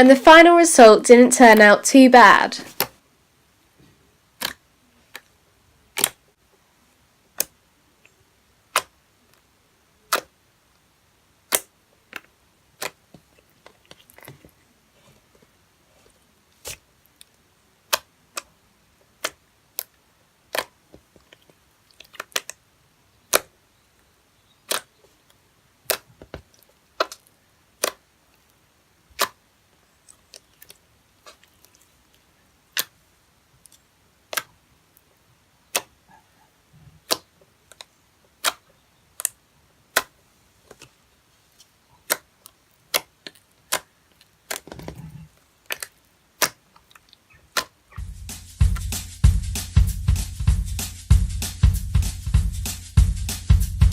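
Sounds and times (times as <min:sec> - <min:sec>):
slime clicking and popping: 0:04.4 - 0:05.3, 0:06.0 - 0:06.2, 0:10.1 - 0:10.3, 0:20.5 - 0:21.4, 0:27.0 - 0:28.0, 0:29.2 - 0:29.4, 0:42.9 - 0:44.6, 0:45.7 - 0:47.8.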